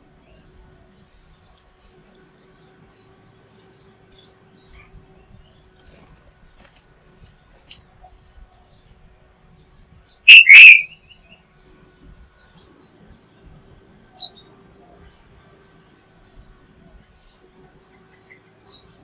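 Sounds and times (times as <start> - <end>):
bird harsh two-note call: 10.3 - 11.0
short high bird chirp: 10.3 - 11.0.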